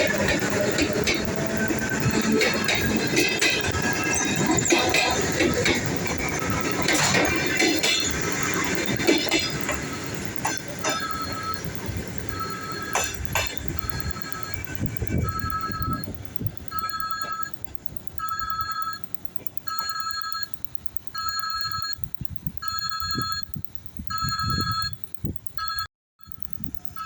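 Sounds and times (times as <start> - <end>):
electric train rumble: 0.0 - 19.9
two-pitch warning beeps: 0.0 - 27.0.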